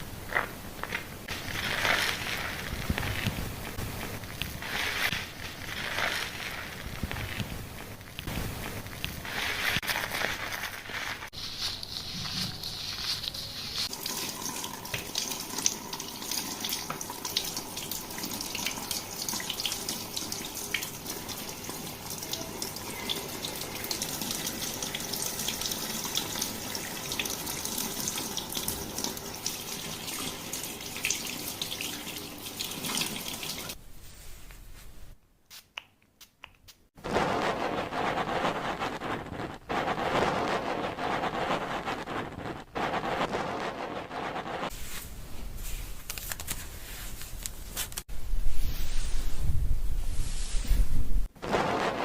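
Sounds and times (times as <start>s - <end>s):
water running through hair: 1.2s - 33.8s.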